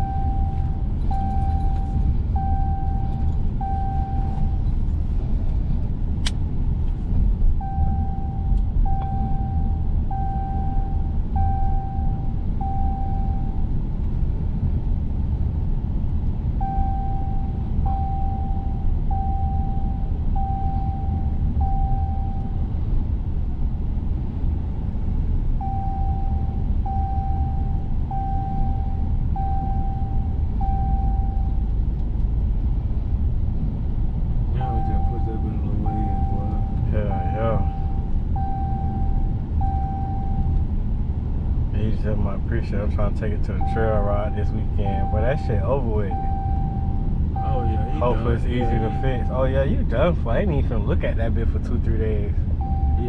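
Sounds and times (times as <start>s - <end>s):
electronic beeps: 0.0s - 4.6s, 7.6s - 13.6s, 16.6s - 22.6s, 34.6s - 40.6s, 43.6s - 49.5s, 52.6s - 53.0s
steady low rumble: 0.0s - 53.0s.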